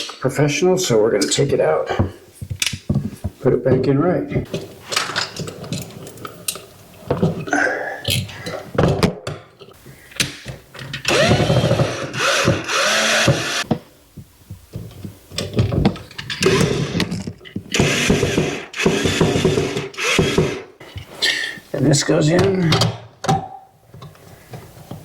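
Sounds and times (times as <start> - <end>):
cordless drill motor whirring: 11.1 - 13.6, 17.8 - 20.6.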